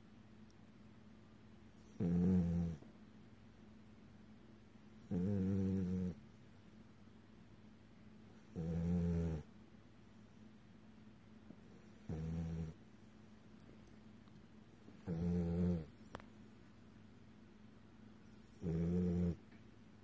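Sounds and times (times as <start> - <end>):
dog snoring: 1.8 - 2.8, 5.0 - 6.2, 8.4 - 9.5, 11.7 - 12.8, 15.0 - 16.0, 18.3 - 19.4.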